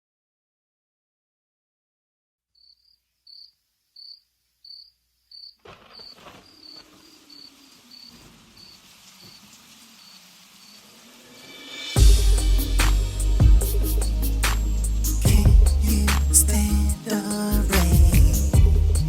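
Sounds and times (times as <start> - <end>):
cricket chirping: 2.6 - 12.8
soft steady hiss: 2.7 - 19.0.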